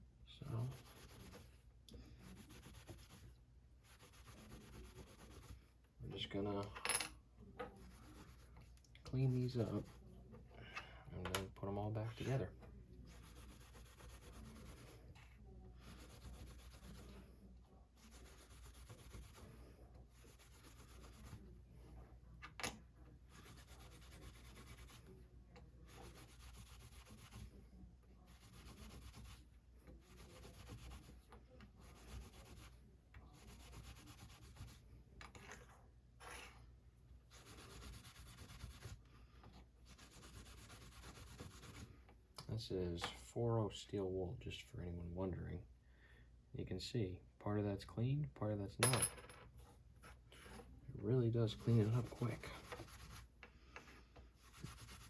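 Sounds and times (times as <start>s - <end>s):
steel wool scrubbing: 51.4s - 53.3s, 54.4s - 55.0s.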